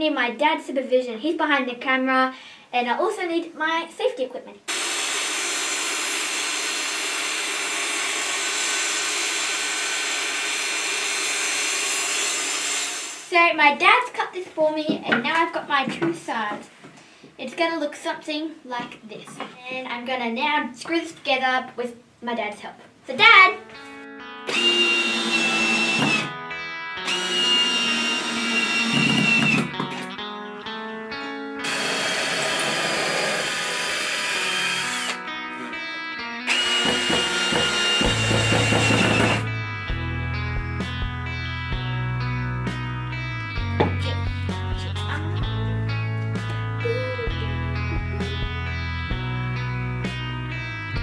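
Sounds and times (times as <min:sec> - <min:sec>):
cordless drill driving screws: 0:04.7 - 0:13.3, 0:24.5 - 0:26.3, 0:27.1 - 0:29.7, 0:31.6 - 0:35.2, 0:36.5 - 0:39.5
table saw cutting a board: 0:04.7 - 0:13.3, 0:24.5 - 0:26.3, 0:27.0 - 0:29.7, 0:31.6 - 0:35.2, 0:36.5 - 0:39.5
background music: 0:23.4 - 0:51.0.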